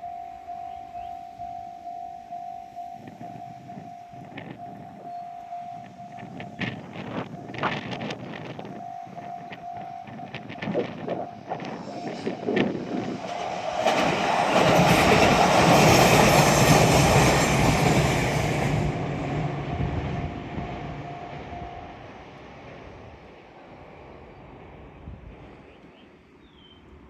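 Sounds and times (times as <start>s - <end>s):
train passing: 0.0s - 26.3s
wheels clattering on rails: 5.8s - 22.1s.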